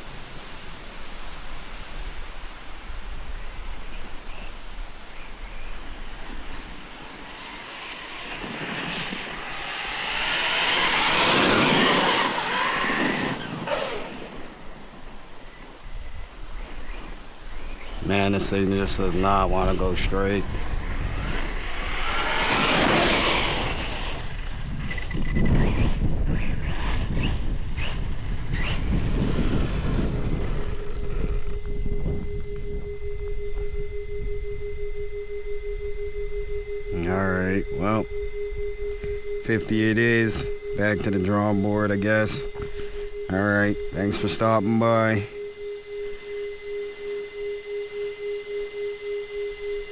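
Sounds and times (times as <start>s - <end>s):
wind buffeting microphone: 1.8s - 34.4s
steady tone: 4.5s - 16.5s, 17.1s - 25.3s, 27.1s - 49.9s
toy car electric motor whine: 5.4s - 15.5s, 16.9s - 49.9s
toy car tyre noise: 6.8s - 14.9s, 20.0s - 31.6s.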